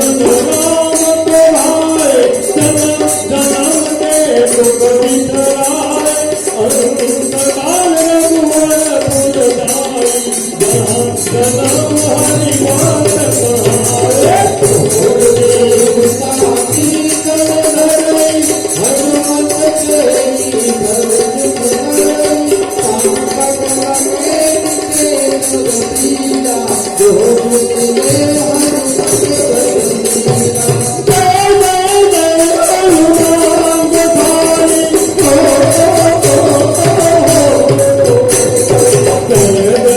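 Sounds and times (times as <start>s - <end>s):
jingling percussion: 0.0s - 39.9s.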